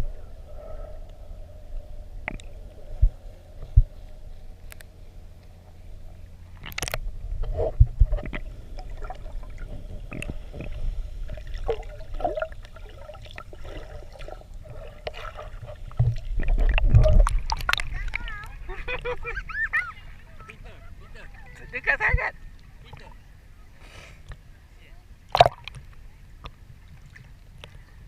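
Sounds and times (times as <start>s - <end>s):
low underwater rumble: 0.0s - 28.0s
water sloshing: 0.6s - 24.4s, 25.1s - 28.0s
bubbles gurgling: 6.6s - 19.6s, 25.3s - 25.8s.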